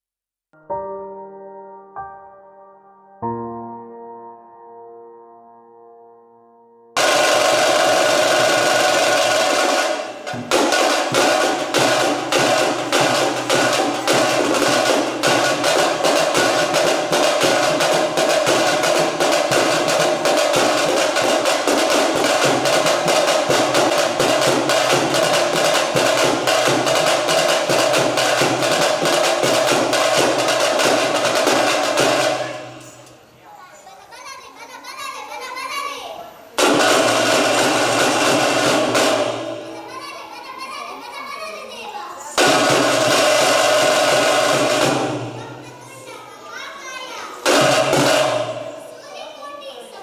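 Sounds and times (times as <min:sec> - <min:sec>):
fast driving drumming: 0:07.0 - 0:32.8, 0:36.6 - 0:39.8, 0:42.4 - 0:45.4, 0:47.4 - 0:48.8.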